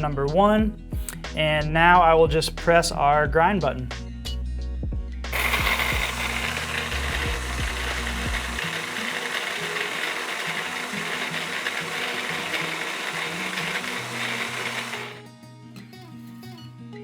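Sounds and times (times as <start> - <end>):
background music: 0.0 - 15.8
coffee grinder whirring: 5.3 - 15.2.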